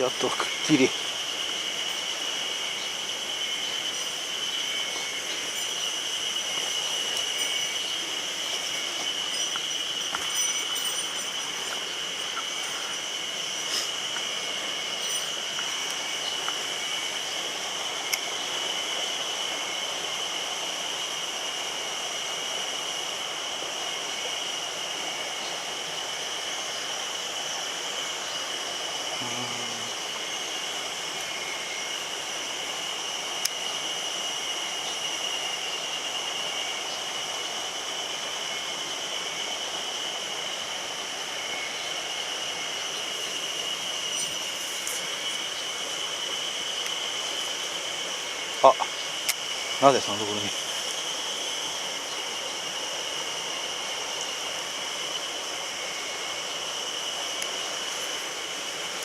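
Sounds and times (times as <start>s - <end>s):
stream rushing: 0.0s - 29.2s.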